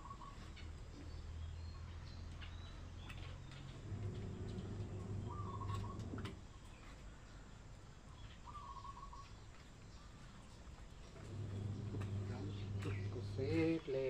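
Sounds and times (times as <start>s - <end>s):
trilled animal calls: 0.0s - 0.9s, 3.8s - 6.4s
low steady hum: 0.0s - 9.0s, 10.8s - 14.0s.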